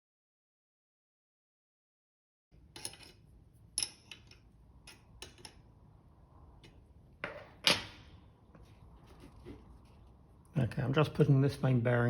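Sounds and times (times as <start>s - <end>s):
metal parts clicking and tapping: 2.7s - 3.2s.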